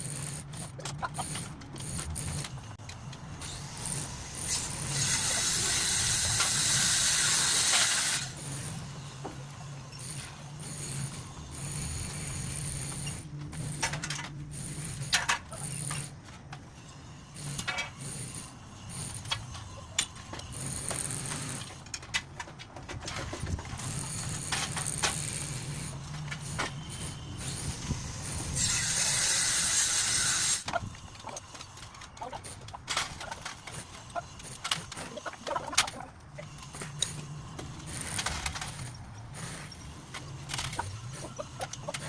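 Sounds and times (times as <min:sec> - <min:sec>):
steady low hum: 0:08.2 - 0:42.0.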